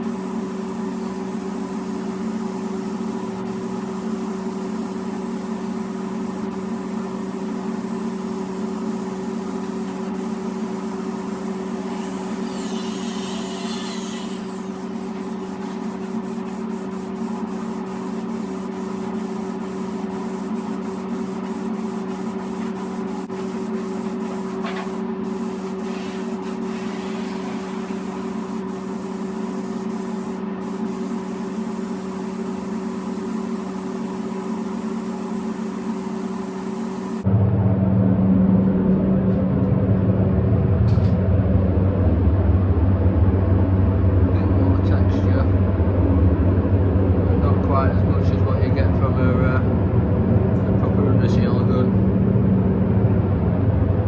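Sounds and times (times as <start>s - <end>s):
spray gun hissing: 0.0s - 37.2s
machine humming: 0.0s - 54.0s.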